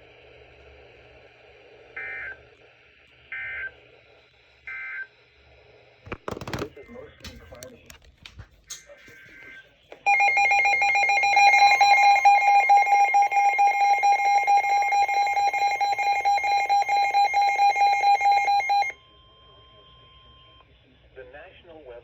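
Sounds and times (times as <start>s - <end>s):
rapidly pulsing alarm beep: 10.0s - 20.6s
steady warning alert tone: 10.1s - 18.9s.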